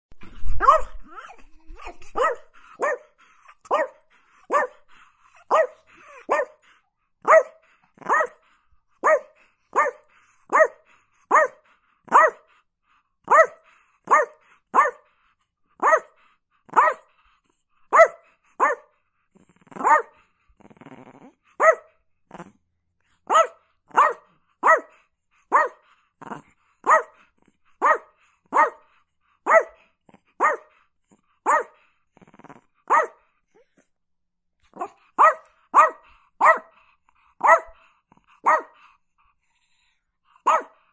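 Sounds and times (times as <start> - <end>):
small dog barking: 0.6 - 1.3, 2.1 - 6.6, 7.2 - 8.4, 9.0 - 12.4, 13.3 - 15.1, 15.8 - 17.1, 17.9 - 18.9, 19.8 - 20.2, 21.6 - 21.9, 23.3 - 25.8, 26.8 - 27.2, 27.8 - 28.9, 29.5 - 29.8, 30.4 - 30.7, 31.4 - 31.8, 32.9 - 33.2, 34.8 - 36.8, 37.4 - 37.8, 38.4 - 38.8, 40.4 - 40.8.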